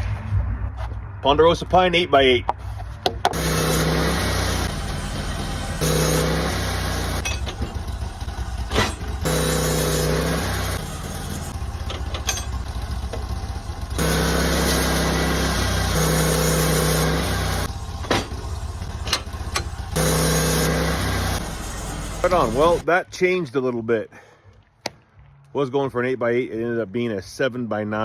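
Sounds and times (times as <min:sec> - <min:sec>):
sawmill engine running: 0:02.6 - 0:22.9.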